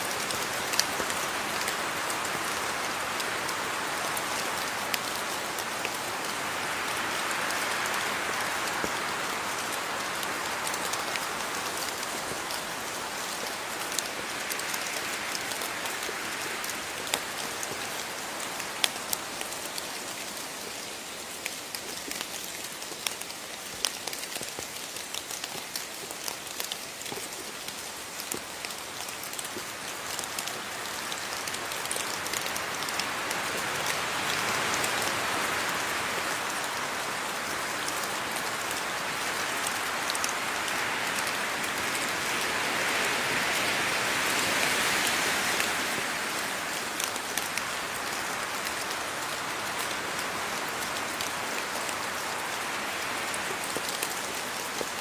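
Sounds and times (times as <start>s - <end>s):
steady rain falling: 0.0s - 55.0s
raindrops ticking: 21.4s - 35.1s.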